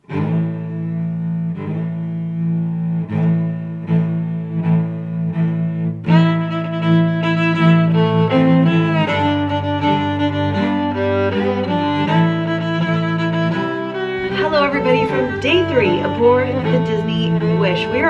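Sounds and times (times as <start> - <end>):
low bowed strings: 0.0 - 18.0
higher musical part: 6.8 - 18.0.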